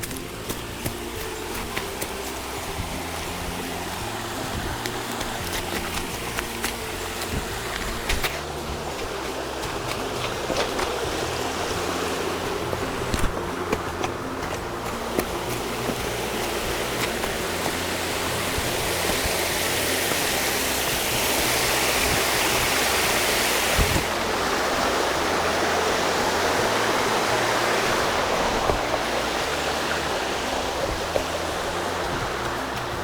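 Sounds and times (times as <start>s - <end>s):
mountain stream rushing: 0.0s - 33.0s.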